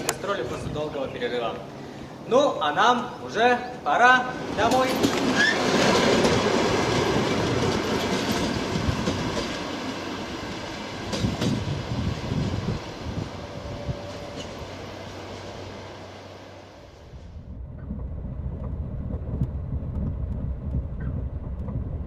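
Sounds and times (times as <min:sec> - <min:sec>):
train wheels clattering on rails: 0:04.3 - 0:13.0.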